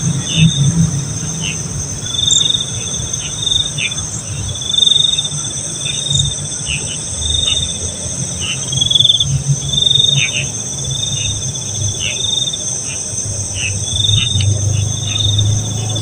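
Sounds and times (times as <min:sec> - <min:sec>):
low rumble: 0:00.0 - 0:04.8
crickets trilling: 0:00.0 - 0:16.0
high insect buzz: 0:00.2 - 0:16.0.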